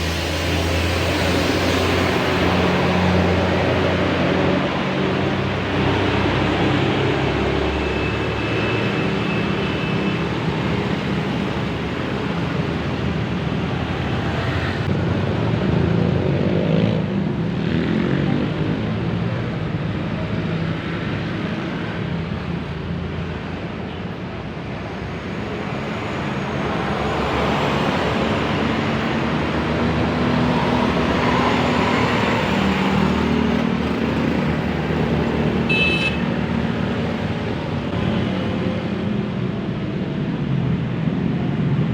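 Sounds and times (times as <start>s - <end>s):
road traffic passing: 0.0s - 41.9s.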